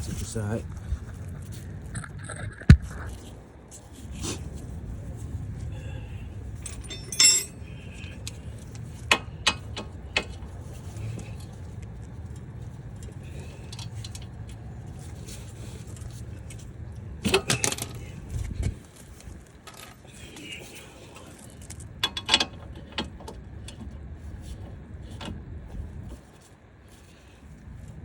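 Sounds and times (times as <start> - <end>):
steady low hum: 0.0 - 28.0
metal tools clinking on metal: 6.6 - 8.0.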